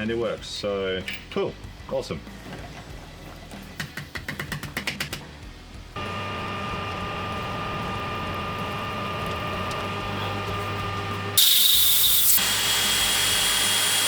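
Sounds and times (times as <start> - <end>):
metal lathe running: 6.0 - 14.0
high hiss: 11.4 - 14.0.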